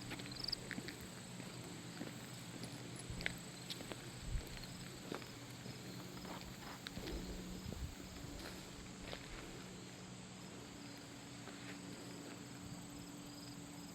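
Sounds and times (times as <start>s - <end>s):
footsteps: 0.0s - 9.6s, 11.0s - 12.4s
insects chirping faintly: 0.0s - 13.9s.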